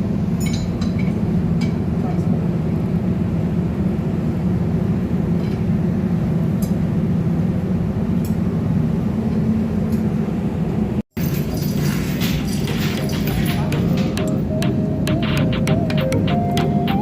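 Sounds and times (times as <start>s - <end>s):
machinery droning: 0.0s - 17.0s
faint metallic clinks: 11.2s - 13.8s.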